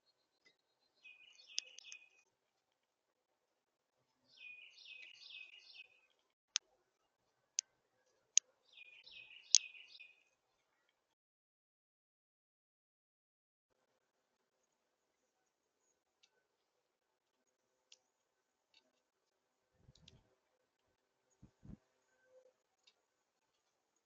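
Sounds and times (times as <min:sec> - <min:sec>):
songbird singing whistled notes: 0:00.0 - 0:02.2, 0:04.3 - 0:06.0, 0:08.7 - 0:10.2
sharp single clicks: 0:01.5 - 0:02.0, 0:09.5 - 0:09.7.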